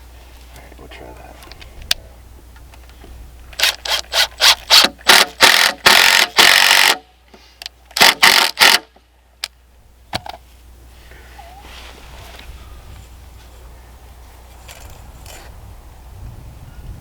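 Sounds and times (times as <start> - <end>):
cordless drill driving screw into wood: 3.6 - 7.0, 8.0 - 8.9.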